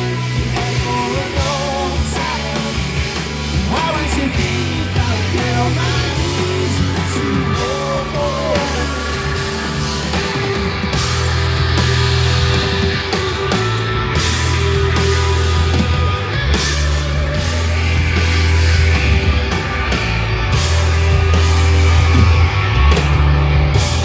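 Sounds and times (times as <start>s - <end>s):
distorted guitar bending pitch: 0.0s - 24.0s
heavy rock band playing: 0.0s - 24.0s
sustained bass notes: 0.0s - 24.0s
person singing: 3.6s - 9.5s.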